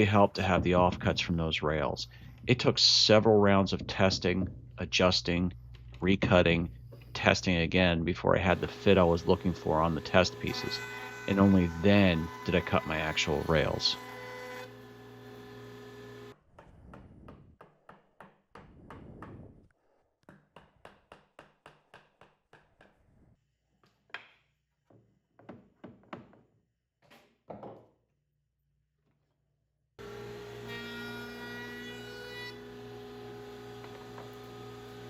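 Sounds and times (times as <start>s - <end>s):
knocking and tapping on wood: 20.3s - 23.0s, 23.8s - 26.4s, 27.5s - 27.8s.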